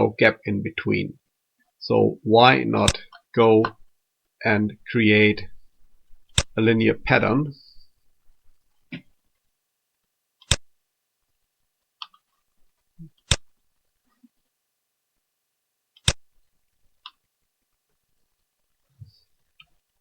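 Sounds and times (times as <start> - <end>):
computer mouse clicks: 10.4 - 10.7, 16.0 - 16.2.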